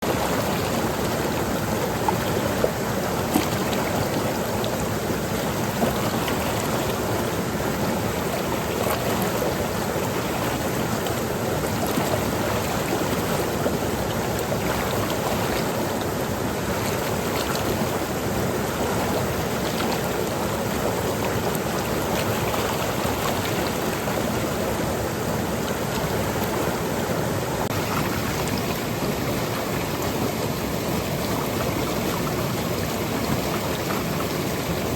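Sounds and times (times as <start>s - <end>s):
stream rushing over rocks: 0.0s - 34.9s
water splashing and trickling: 0.0s - 34.9s.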